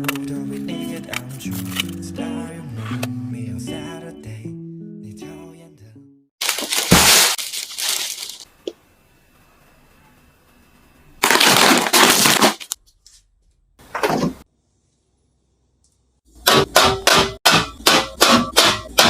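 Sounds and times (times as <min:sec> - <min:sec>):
plastic packaging crackling: 0:06.4 - 0:08.5, 0:11.2 - 0:12.8.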